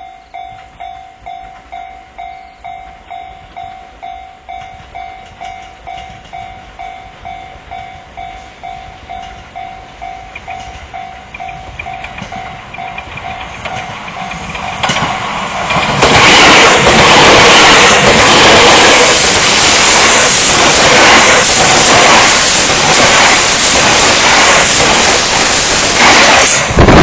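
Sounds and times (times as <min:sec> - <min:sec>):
level-crossing bell ringing: 0:00.0 - 0:14.5
train rushing past: 0:00.0 - 0:27.0
train wheels clattering: 0:02.6 - 0:27.0.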